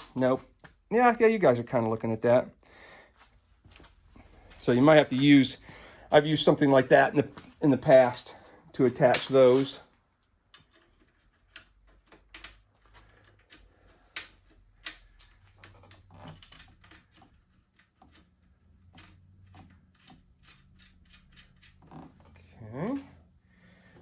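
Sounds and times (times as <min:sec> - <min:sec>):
small metal parts clicking: 0:10.5 - 0:22.3.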